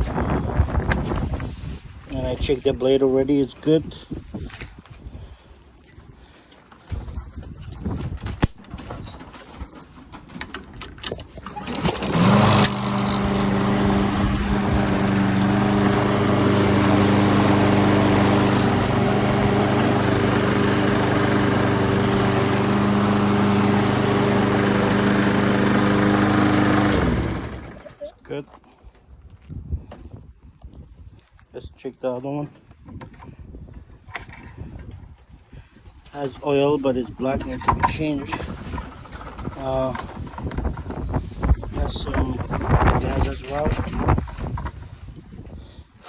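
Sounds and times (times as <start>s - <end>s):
lawn mower engine knocks and rattles: 6.7s - 28.7s, 34.0s - 35.0s, 36.1s - 45.2s
lawn mower engine running: 8.5s - 28.2s, 36.2s - 45.8s.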